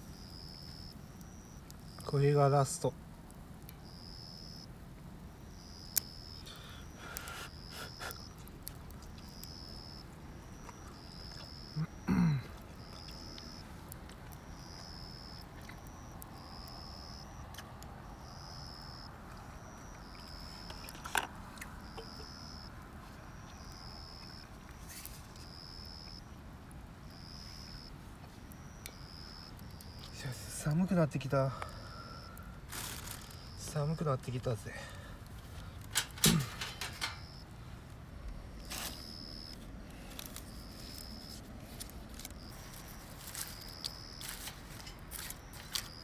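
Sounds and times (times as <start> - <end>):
low steady hiss: 0.0 - 46.0.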